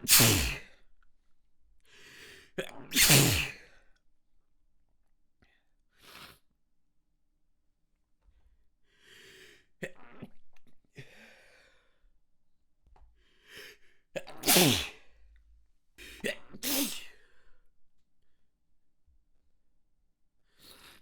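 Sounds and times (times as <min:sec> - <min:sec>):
person sneezing: 0:00.0 - 0:00.7, 0:02.9 - 0:03.6, 0:14.2 - 0:15.0, 0:16.0 - 0:17.2
quick in-breath: 0:00.0 - 0:00.8, 0:01.9 - 0:03.6, 0:08.9 - 0:09.7, 0:13.2 - 0:14.0.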